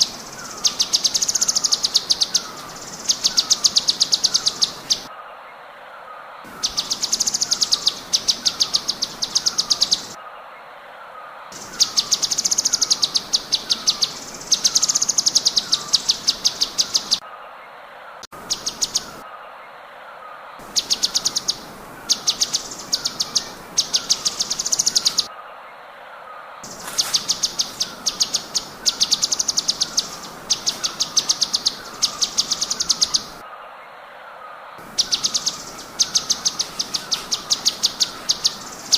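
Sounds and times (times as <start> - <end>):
bird song with rattling notes: 0.0 - 5.1, 6.5 - 10.2, 11.6 - 17.2, 20.6 - 25.3, 26.6 - 33.4, 34.8 - 38.9.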